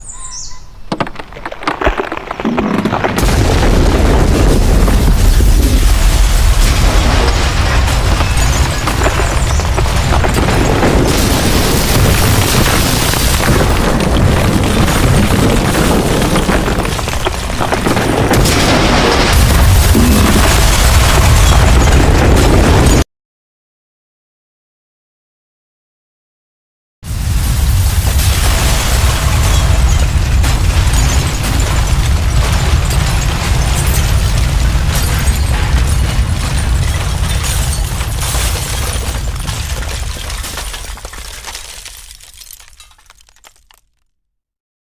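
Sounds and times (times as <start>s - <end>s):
loud rumble with crackles and booms: 1.5s - 23.1s, 27.0s - 43.4s
glass shattering: 4.9s - 23.0s, 28.1s - 44.0s.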